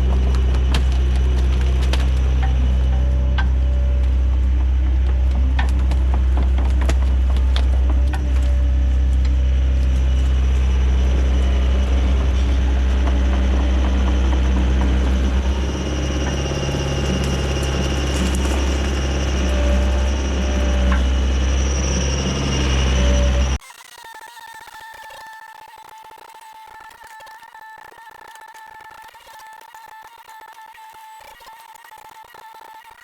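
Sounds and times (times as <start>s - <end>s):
excavator engine running: 0.0s - 23.6s
steady high whine: 0.0s - 32.0s.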